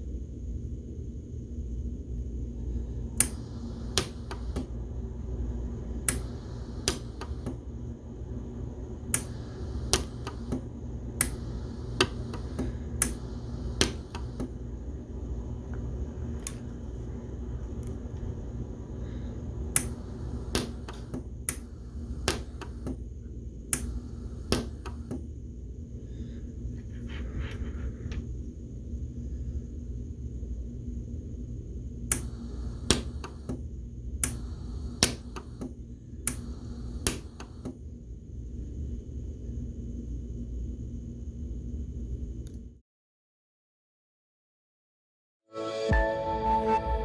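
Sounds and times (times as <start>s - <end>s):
steady low hum: 0.0s - 42.8s
welder sharp snaps: 3.2s - 4.8s, 6.0s - 7.6s, 9.1s - 14.6s, 19.7s - 23.0s, 23.7s - 25.2s, 32.1s - 33.6s, 34.2s - 37.7s.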